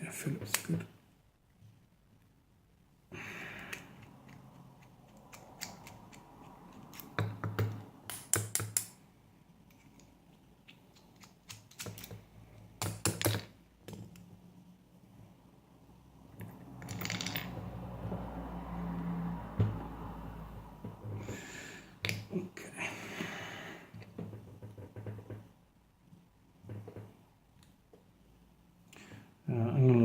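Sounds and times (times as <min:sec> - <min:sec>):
padlock and tools clicking and rattling: 0:03.7 - 0:09.0, 0:09.7 - 0:14.3, 0:16.4 - 0:17.6.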